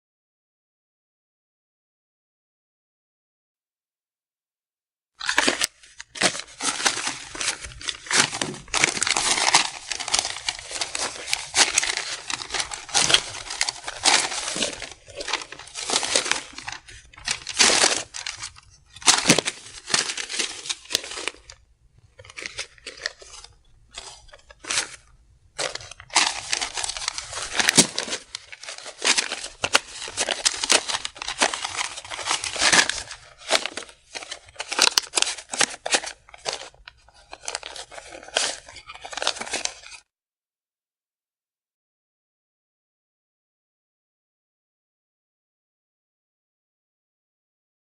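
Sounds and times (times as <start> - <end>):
banknotes rustling: 5.2 - 40.0.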